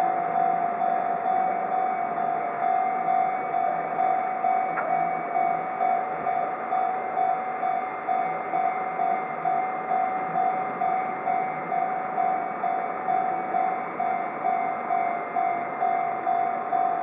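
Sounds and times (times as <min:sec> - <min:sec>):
level-crossing warning bell ringing: 0:00.0 - 0:17.0.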